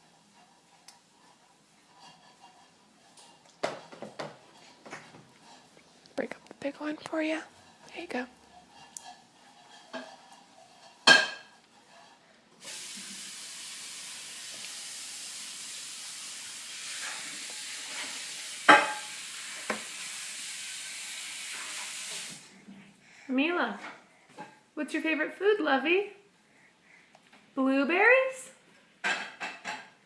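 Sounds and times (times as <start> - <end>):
steady hiss: 12.6 - 22.6.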